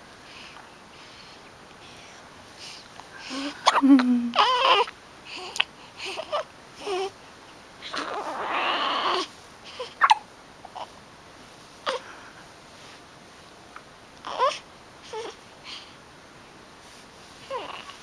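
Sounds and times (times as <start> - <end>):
baby fussy cry: 3.3 - 5.5, 7.8 - 10.2, 14.2 - 15.4, 17.5 - 18.0
baby hiccuping: 3.6 - 4.7, 10.0 - 10.2.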